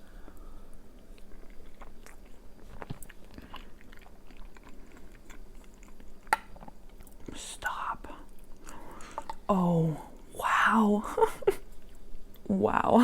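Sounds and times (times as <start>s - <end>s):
mouth chewing clicks and smacks: 1.0s - 9.5s.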